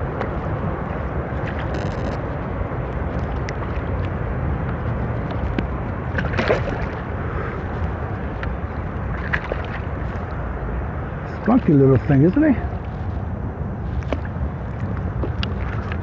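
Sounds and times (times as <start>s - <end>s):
water around a kayak: 0.0s - 16.0s
wind: 0.0s - 16.0s
clicks and rustles of handling: 1.5s - 2.2s.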